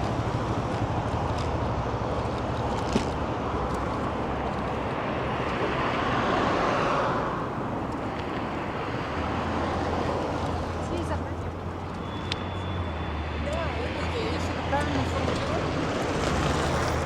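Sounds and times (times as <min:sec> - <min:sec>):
city road traffic: 0:00.0 - 0:17.0
vehicle passing: 0:03.5 - 0:17.0.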